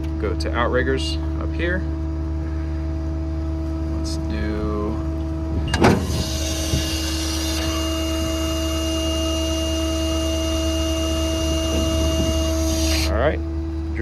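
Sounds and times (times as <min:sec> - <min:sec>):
diesel engine idling: 0:00.2 - 0:14.0
hydraulic pump hum: 0:00.9 - 0:14.0
hydraulic hiss: 0:03.7 - 0:13.1.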